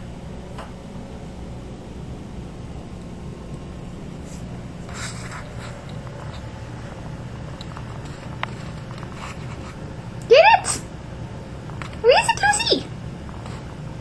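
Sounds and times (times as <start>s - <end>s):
low mechanical hum: 0.0s - 14.0s
scratchy rustle: 4.2s - 6.5s, 7.8s - 9.8s.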